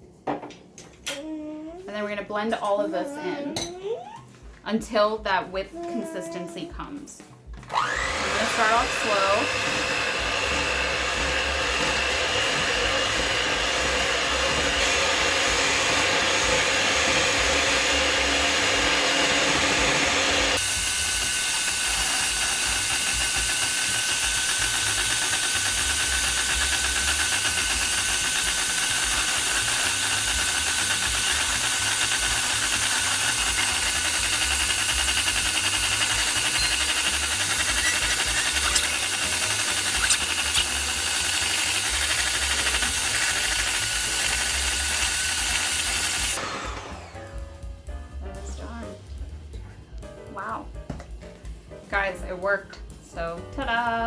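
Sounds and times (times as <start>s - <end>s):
electric mixer whining: 7.6s - 47.4s.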